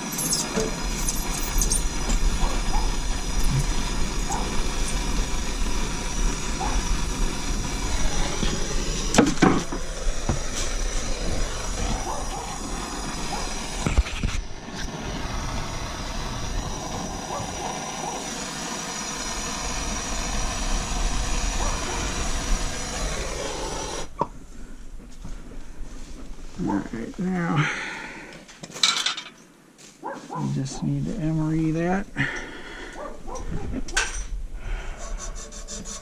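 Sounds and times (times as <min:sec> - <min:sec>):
gas torch roaring and hissing: 0:00.0 - 0:28.4.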